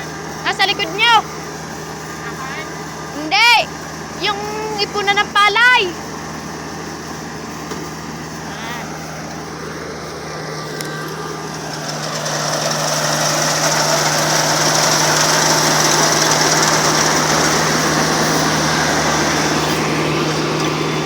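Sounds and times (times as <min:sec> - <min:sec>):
combine harvester engine hum: 0:00.0 - 0:21.0
machinery clatter: 0:11.1 - 0:21.0.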